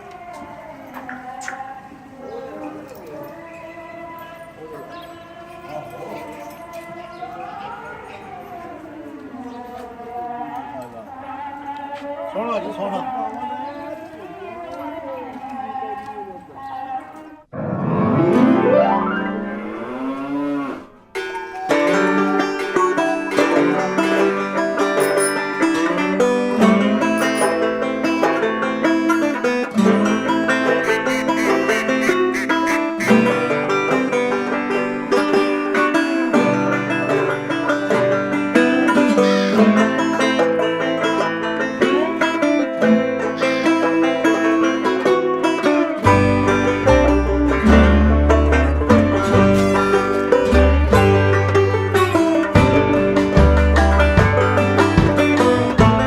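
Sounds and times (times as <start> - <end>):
music with plucked strings: 17.6 - 19.7, 21.1 - 56.0
cow mooing: 19.0 - 21.1, 30.0 - 33.5.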